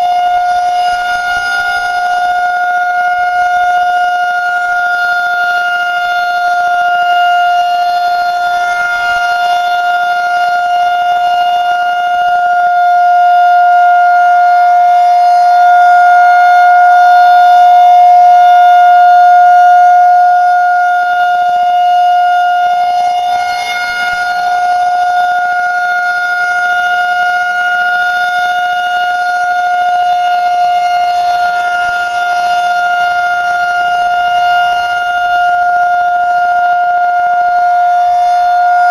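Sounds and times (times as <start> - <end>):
warning siren wailing: 0.0 - 38.9.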